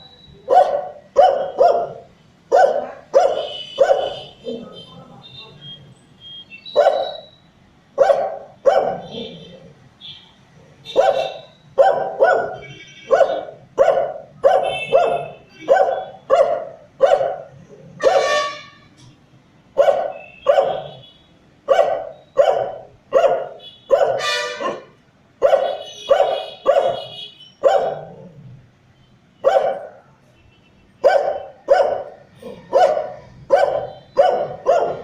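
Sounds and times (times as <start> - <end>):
dog barking: 0.4 - 4.8, 6.7 - 7.3, 8.0 - 9.6, 10.8 - 18.5, 19.8 - 21.0, 21.6 - 28.4, 29.4 - 30.1, 31.0 - 35.0.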